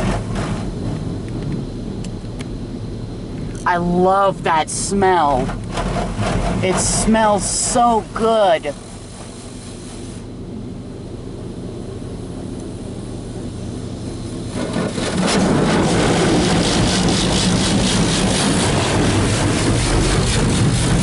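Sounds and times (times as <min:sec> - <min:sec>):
low steady hum: 0:00.0 - 0:21.0
high-pressure water spraying on car: 0:04.6 - 0:21.0.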